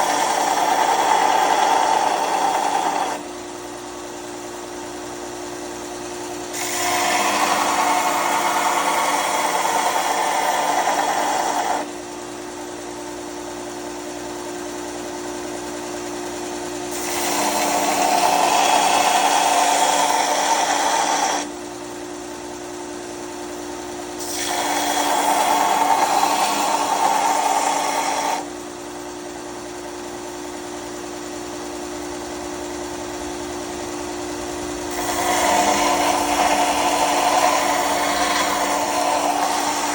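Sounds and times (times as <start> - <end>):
workpiece grinding on abrasive belt: 0.0 - 3.4, 6.2 - 12.0, 16.8 - 21.5, 24.2 - 28.5, 34.9 - 39.9
belt grinder motor hum: 0.0 - 4.0, 6.0 - 12.2, 16.8 - 21.6, 24.2 - 29.2, 34.4 - 39.9.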